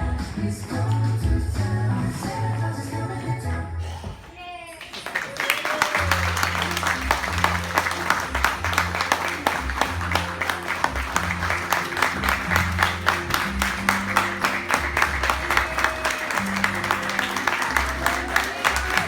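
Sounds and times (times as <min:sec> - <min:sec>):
music with held bass notes: 0:00.0 - 0:03.8, 0:06.0 - 0:19.0
audience clapping: 0:04.8 - 0:19.0.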